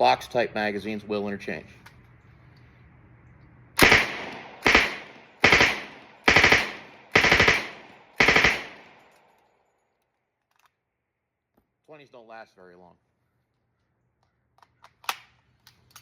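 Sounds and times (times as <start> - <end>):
submachine gun automatic fire: 3.8 - 9.0.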